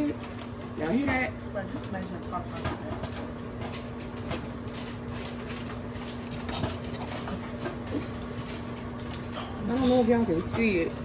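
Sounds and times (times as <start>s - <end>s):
microwave oven hum: 0.0s - 11.0s
popcorn popping: 0.0s - 11.0s.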